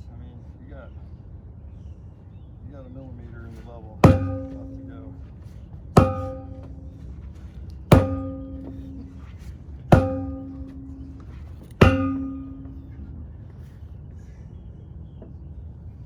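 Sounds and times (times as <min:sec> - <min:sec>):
post driver clanking on piling: 0:04.0 - 0:05.2, 0:06.0 - 0:07.3, 0:07.9 - 0:13.1.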